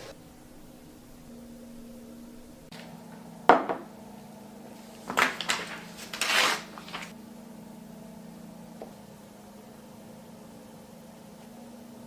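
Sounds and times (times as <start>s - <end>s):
steady low hum: 0.0s - 12.0s
kitchenware clattering: 5.0s - 7.1s.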